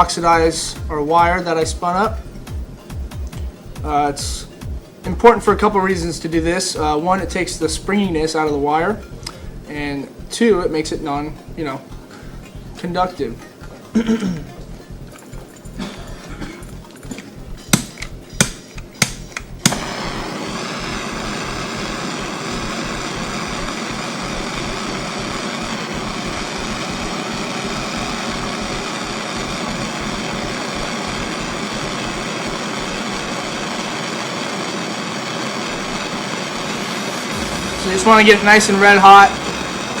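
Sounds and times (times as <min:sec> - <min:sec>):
butane torch clicking: 0:16.7 - 0:40.0
torch flame hissing: 0:17.7 - 0:40.0.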